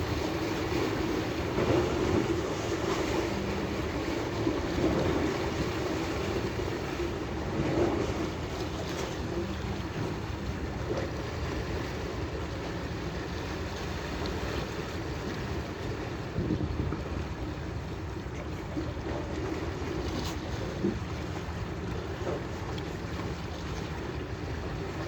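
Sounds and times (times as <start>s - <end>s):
sea water washing: 0.0s - 25.0s
wind buffeting microphone: 16.0s - 17.6s.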